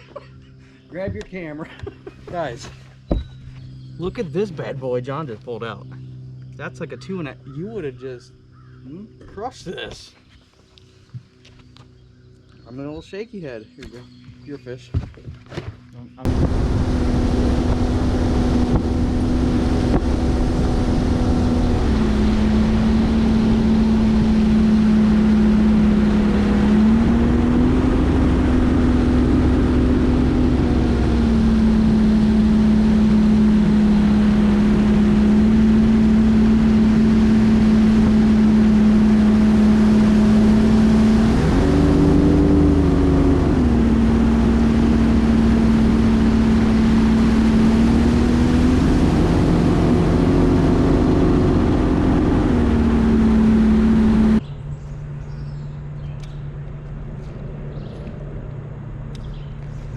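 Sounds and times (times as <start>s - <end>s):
outboard motor running: 0.0s - 54.4s
wind noise: 16.2s - 54.4s.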